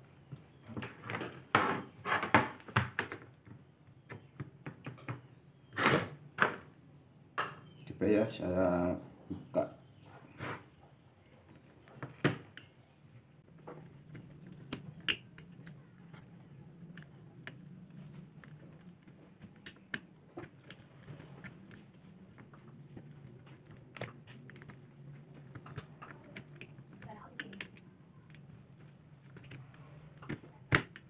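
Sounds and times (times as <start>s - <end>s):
small clicks and taps: 13.6s - 31.0s.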